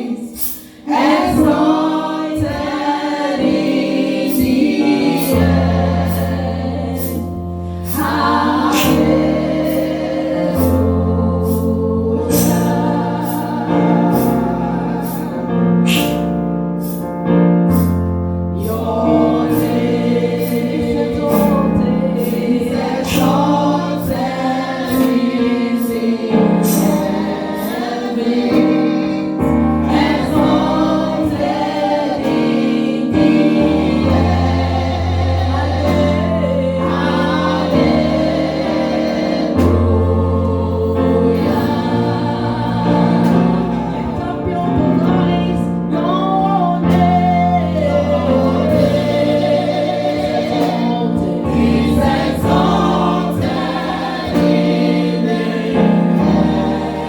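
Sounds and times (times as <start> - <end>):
bass and keyboard accompaniment: 0.0 - 57.0
gospel choir singing: 0.0 - 57.0.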